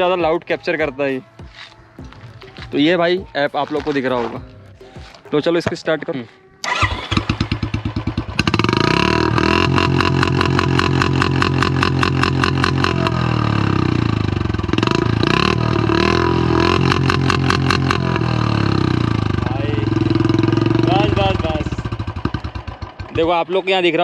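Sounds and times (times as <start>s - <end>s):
motorcycle engine revving: 6.6s - 23.7s.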